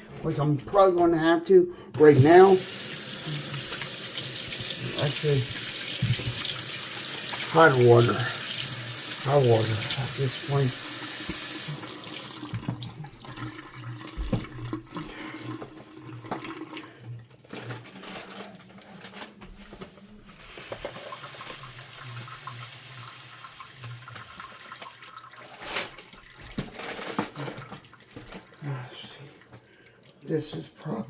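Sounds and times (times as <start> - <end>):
hands being washed: 2.0 - 16.8
water draining and dripping: 2.0 - 17.3, 20.9 - 28.6.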